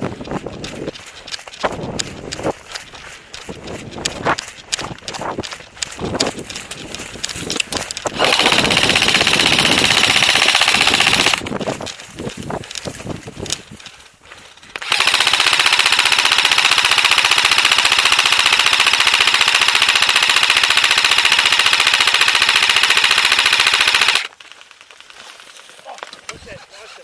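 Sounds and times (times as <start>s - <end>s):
airsoft rifle automatic fire: 8.1s - 11.5s, 14.7s - 24.4s.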